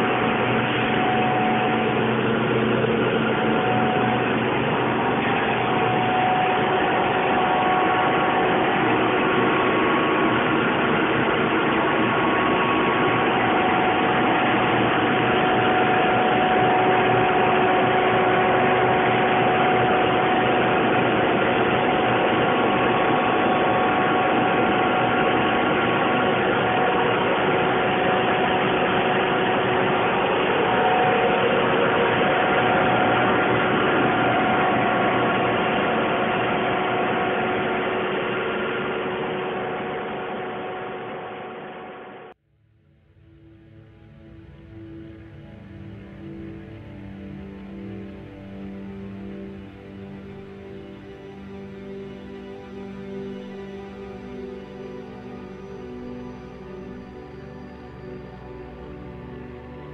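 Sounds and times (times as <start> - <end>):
high whining tones: 0.0 - 42.2
steady machine drone: 0.0 - 59.9.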